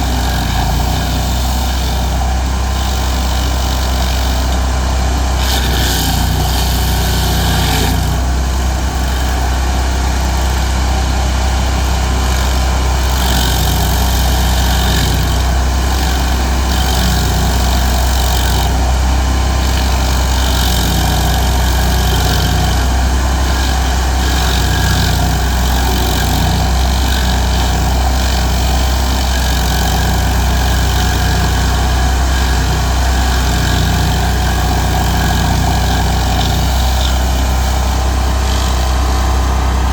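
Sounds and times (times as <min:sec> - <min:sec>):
cutting wheel grinding stump: 0:00.0 - 0:39.9
stump grinder engine running: 0:00.0 - 0:39.9.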